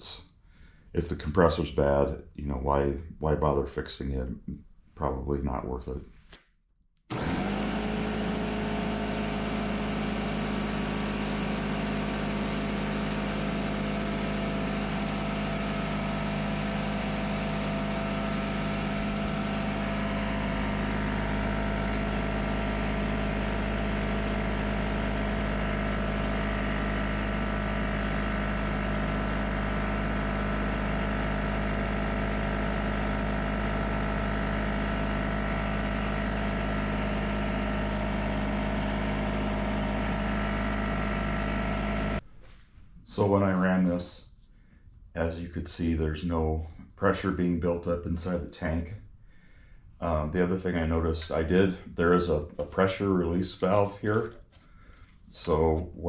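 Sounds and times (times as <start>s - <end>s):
air compressor running: 7.1s - 42.2s.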